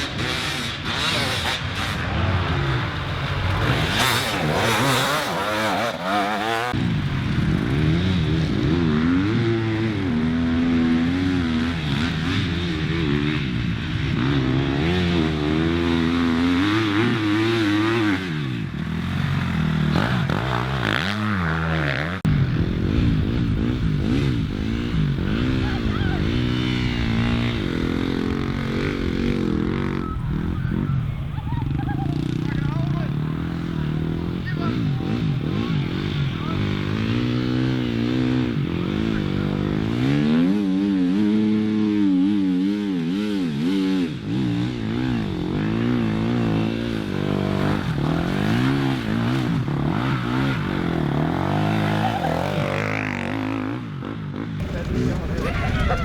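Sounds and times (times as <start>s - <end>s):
motorcycle engines revving: 0.0s - 56.0s.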